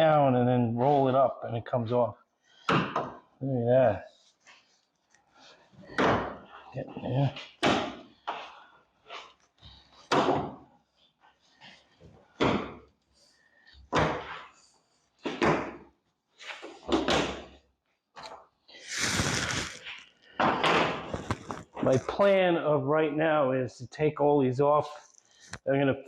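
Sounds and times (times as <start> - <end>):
scraping rustle: 18.8 - 20.0.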